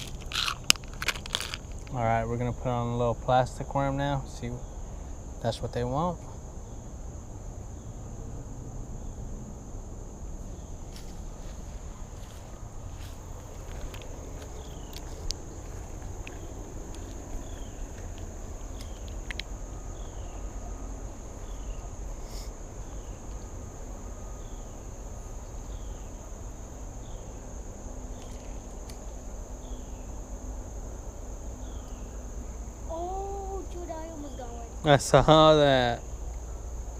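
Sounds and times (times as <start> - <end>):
insect chorus drone: 0.0 - 36.9.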